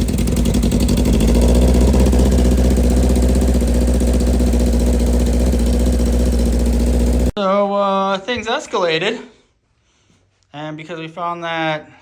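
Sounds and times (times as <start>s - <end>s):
motorcycle engine idling: 0.0s - 7.4s.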